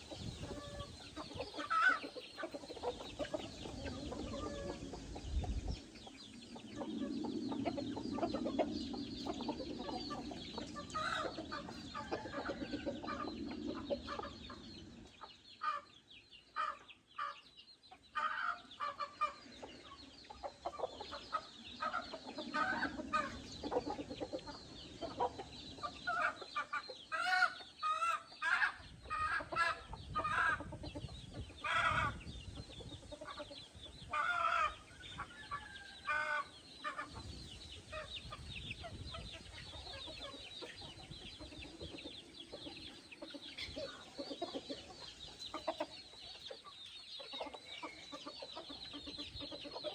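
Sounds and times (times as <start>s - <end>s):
chickens clucking: 0.0s - 49.9s.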